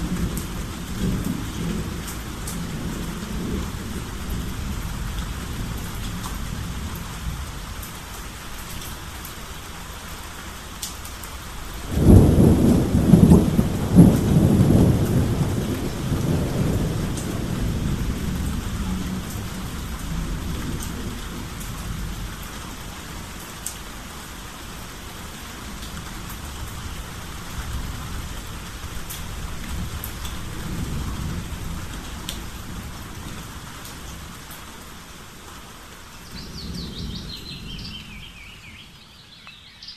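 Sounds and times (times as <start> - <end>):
steady rain falling: 0.0 - 39.9
thunder cracking and rumbling: 11.8 - 22.4.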